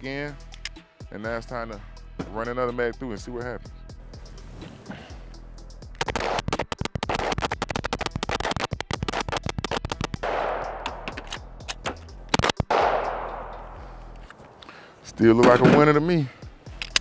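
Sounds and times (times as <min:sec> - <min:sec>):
pistol shots: 0:12.4 - 0:13.6.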